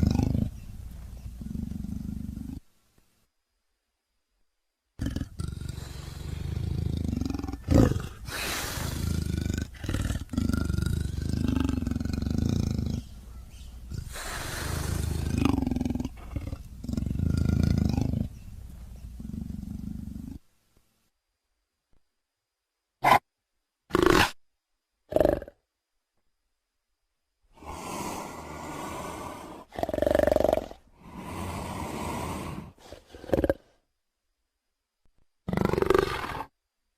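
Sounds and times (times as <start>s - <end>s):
creature growling: 5.0s - 13.0s.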